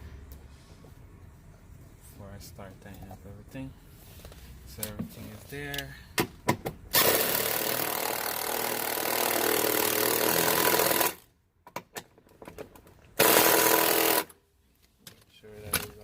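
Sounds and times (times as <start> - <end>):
impact driver running: 6.9 - 11.2, 13.2 - 14.3.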